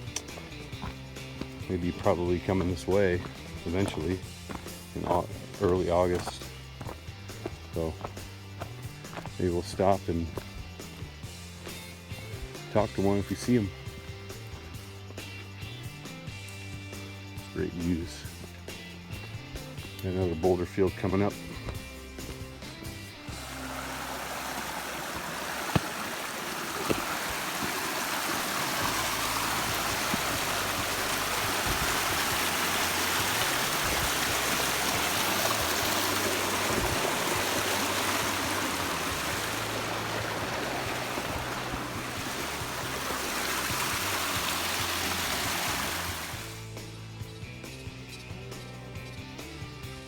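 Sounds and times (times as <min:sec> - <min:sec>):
background music: 0:00.0 - 0:50.0
mountain stream rushing: 0:23.4 - 0:46.6.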